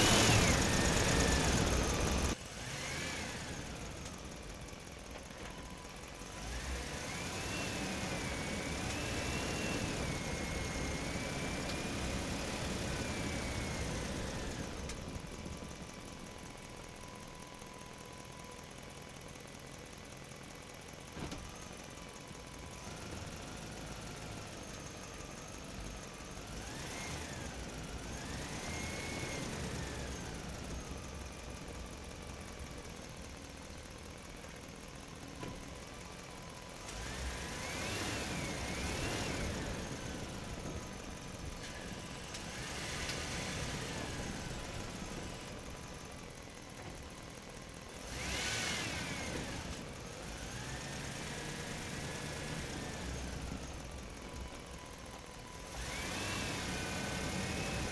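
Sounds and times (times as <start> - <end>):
electric motors whining: 0.0 - 4.2.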